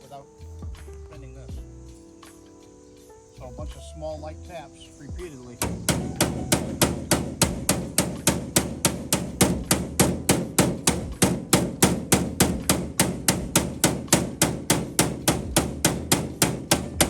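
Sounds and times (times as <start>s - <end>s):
hammer tapping metal plate: 5.6s - 17.0s.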